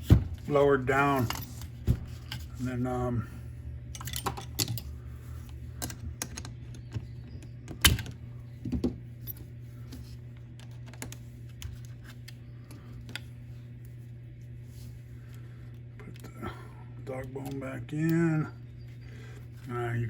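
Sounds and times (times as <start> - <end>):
steady low hum: 0.0 - 20.0
small parts clicking and clinking: 3.9 - 4.9.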